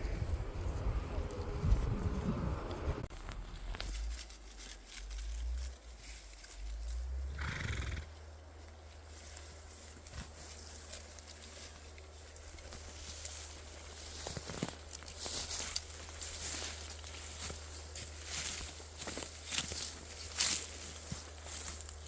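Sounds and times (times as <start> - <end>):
low rumble: 0.0 - 7.4
horse whinnying: 7.3 - 8.1.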